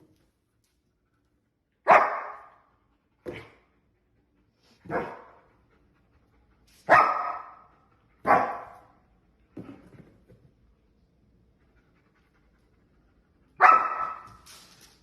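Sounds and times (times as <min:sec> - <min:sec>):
dog barking: 0:01.8 - 0:02.6, 0:04.9 - 0:05.4, 0:06.9 - 0:08.9, 0:13.6 - 0:14.4.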